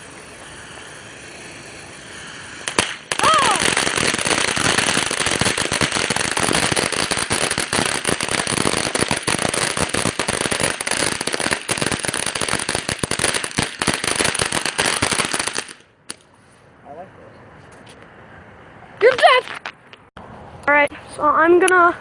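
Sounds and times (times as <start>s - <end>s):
firework crackling pops: 0.0s - 16.3s.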